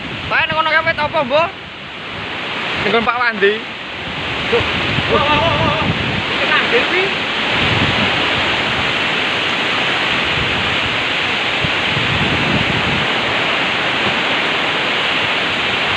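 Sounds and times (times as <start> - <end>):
hail and rain in wind: 0.0 - 15.9.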